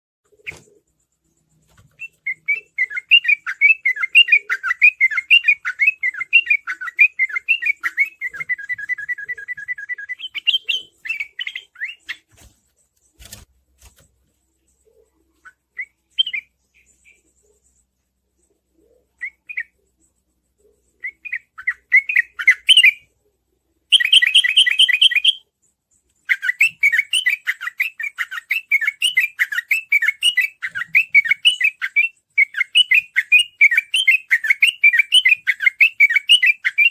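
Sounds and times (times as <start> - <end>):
bulbul chattering song: 0.3 - 12.3, 23.9 - 36.9
fast bird trill: 2.0 - 12.3.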